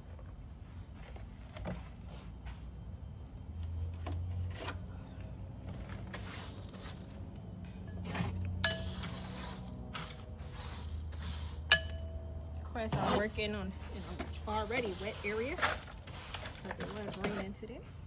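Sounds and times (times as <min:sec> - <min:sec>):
sharp ringing clinks: 0:11.7 - 0:12.6.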